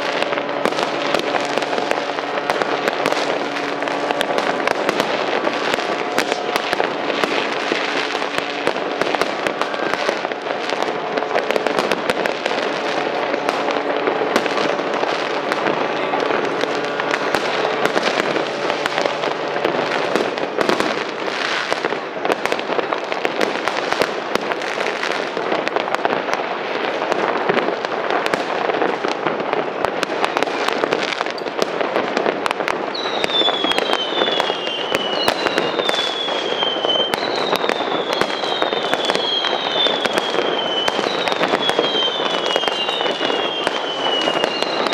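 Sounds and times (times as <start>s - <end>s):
fireworks crackling: 0.0s - 44.9s
fireworks falling whistles: 0.0s - 44.9s.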